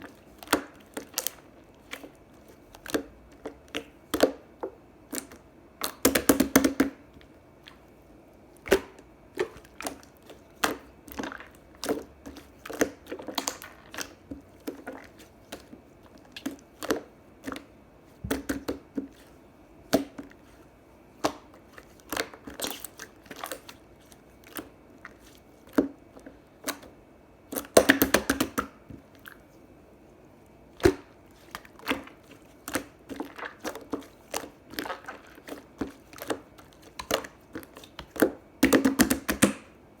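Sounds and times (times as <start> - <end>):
slime squishing and popping: 8.7 - 15.7, 27.5 - 28.8, 30.8 - 39.7.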